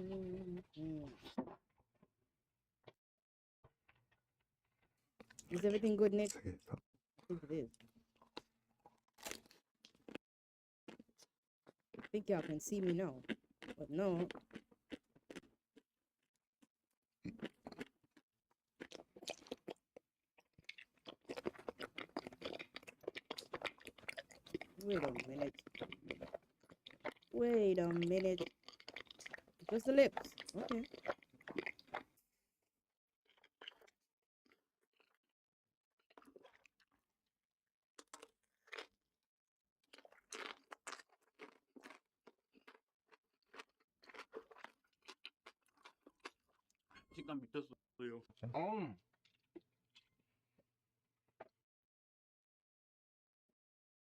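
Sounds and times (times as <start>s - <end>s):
person chewing crunchy food: 7.8s - 10.2s, 10.9s - 15.9s, 17.3s - 32.2s, 33.3s - 35.2s, 36.0s - 37.0s, 38.0s - 39.0s, 39.8s - 47.2s.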